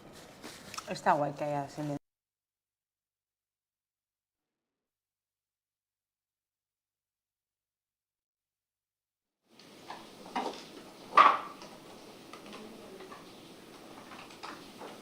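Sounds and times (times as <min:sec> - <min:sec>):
tableware knocking and clattering: 0:09.9 - 0:11.8.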